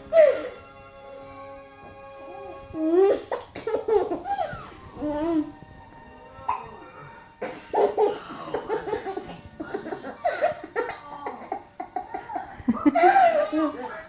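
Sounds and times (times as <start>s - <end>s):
young child laughing: 12.0s - 14.0s.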